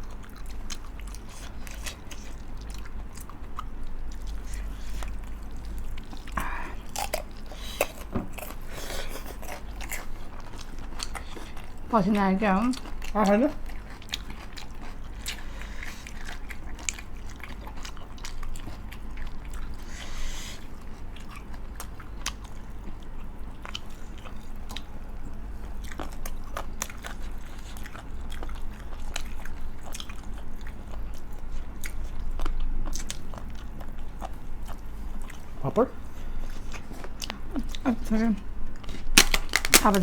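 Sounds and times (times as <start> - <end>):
chewing and biting: 0.0 - 11.9, 12.6 - 40.0
crunchy bites: 38.9 - 40.0.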